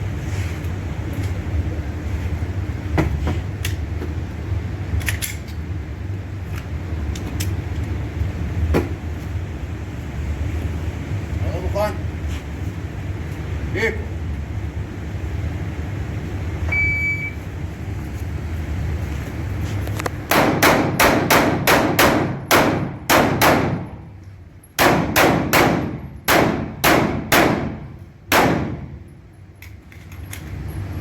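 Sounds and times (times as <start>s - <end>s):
short high beep: 16.7s - 17.4s
pistol shots: 20.3s - 24.0s, 24.8s - 29.0s.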